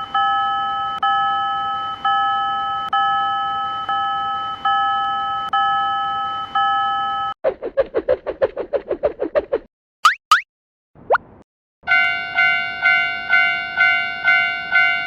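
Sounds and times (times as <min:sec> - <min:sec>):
railroad crossing warning bell: 0:00.0 - 0:07.4, 0:11.8 - 0:15.0
short plopping sound effects: 0:10.0 - 0:10.5.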